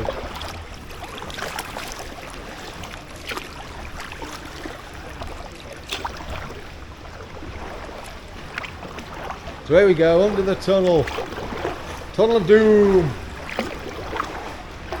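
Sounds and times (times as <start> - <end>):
paddle splashing water: 0.0 - 15.0.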